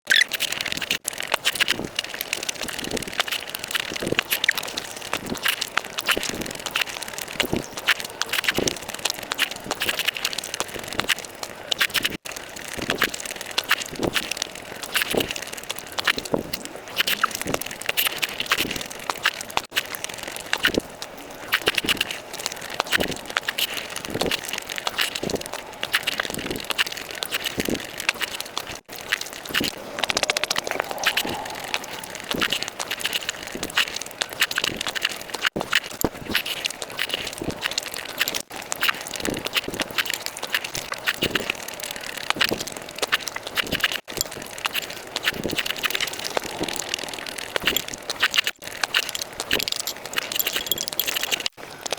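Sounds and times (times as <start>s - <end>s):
wet chewing and lip-smacking: 0.1s - 51.9s
clicking mouth sounds: 29.4s - 33.9s, 44.7s - 51.4s.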